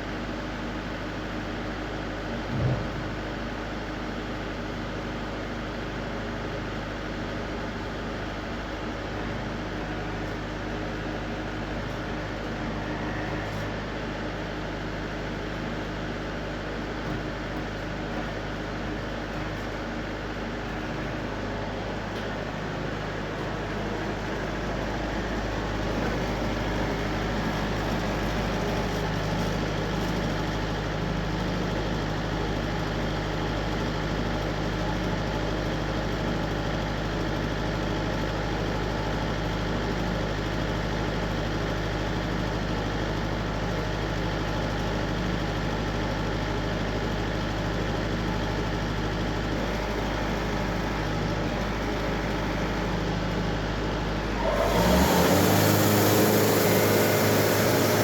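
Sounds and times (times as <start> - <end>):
engine idling: 20.7 - 58.0.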